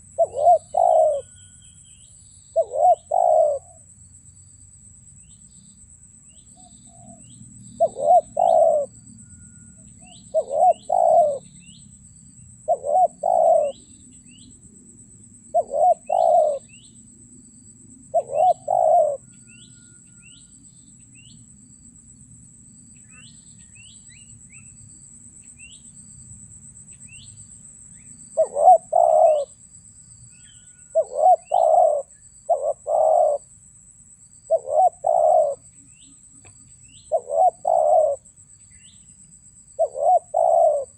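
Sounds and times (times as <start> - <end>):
dove cooing: 0.0 - 1.4, 2.5 - 3.8, 7.8 - 11.5, 12.6 - 13.9, 15.5 - 16.7, 18.1 - 19.3, 28.4 - 29.6, 30.8 - 33.5, 34.5 - 35.7, 37.1 - 38.3, 39.8 - 40.9
small birds chirping faintly: 0.0 - 21.9, 22.7 - 40.9.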